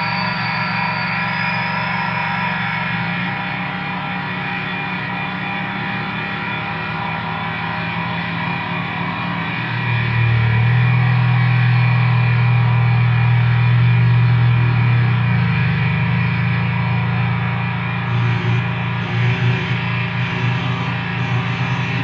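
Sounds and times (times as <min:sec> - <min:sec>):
deep low drone: 0:10.4 - 0:22.0
distorted droning noise music: 0:18.0 - 0:22.0.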